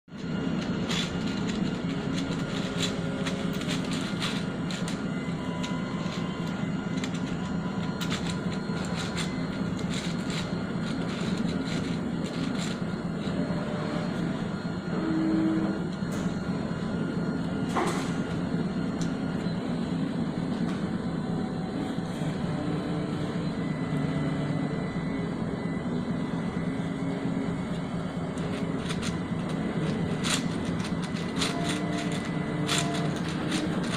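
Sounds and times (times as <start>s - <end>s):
fan hum: 0.0s - 33.9s
stepper motors singing: 0.1s - 14.6s, 27.0s - 33.9s.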